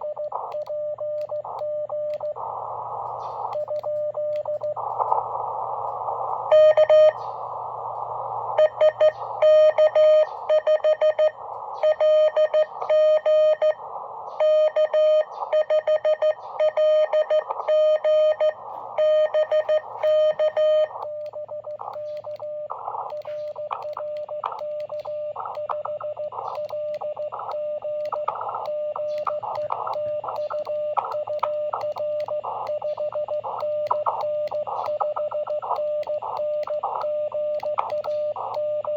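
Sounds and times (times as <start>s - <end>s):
radio band hiss: 2.2s - 3.7s, 4.7s - 38.8s
morse code tone: 8.6s - 13.8s, 14.4s - 21.6s.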